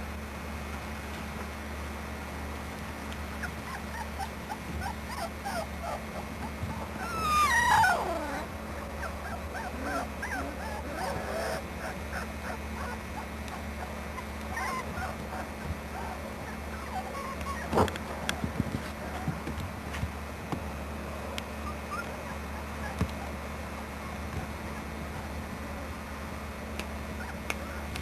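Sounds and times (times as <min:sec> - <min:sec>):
low steady hum: 0:00.0 - 0:28.0
puppies whimpering and squeaking: 0:03.4 - 0:19.6, 0:21.4 - 0:25.3, 0:27.2 - 0:28.0.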